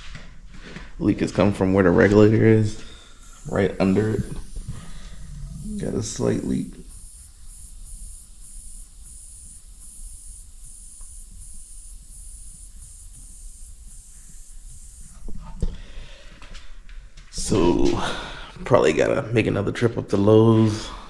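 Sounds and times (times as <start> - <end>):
compressed air hissing: 2.0 - 16.9.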